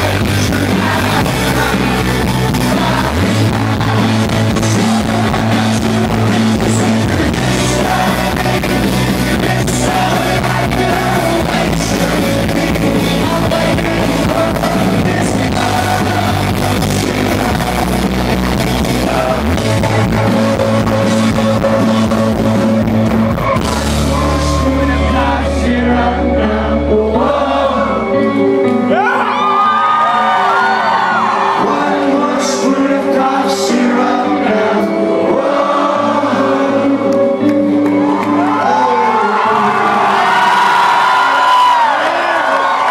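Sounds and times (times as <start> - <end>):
sustained bass notes: 0.0 - 30.2
person singing: 0.0 - 41.0
rock band playing live: 0.0 - 41.9.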